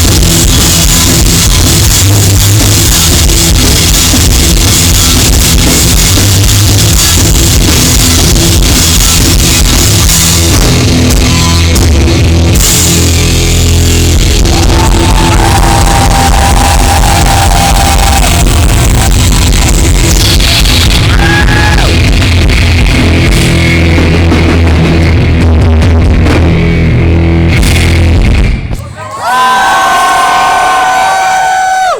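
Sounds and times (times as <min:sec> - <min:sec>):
rock band playing live: 0:00.0 - 0:28.8.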